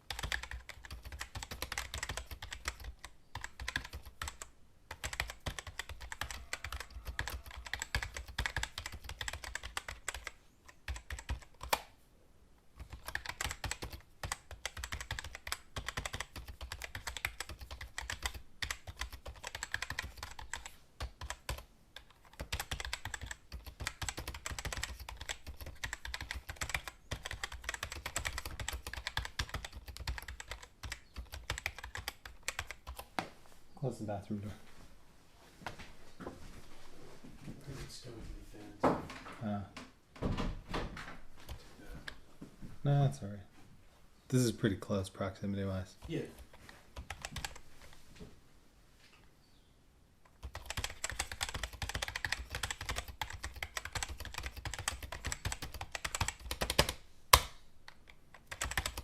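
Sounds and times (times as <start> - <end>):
typing on computer keyboard: 0.0 - 11.9, 12.8 - 33.1, 46.0 - 47.6, 50.3 - 59.0.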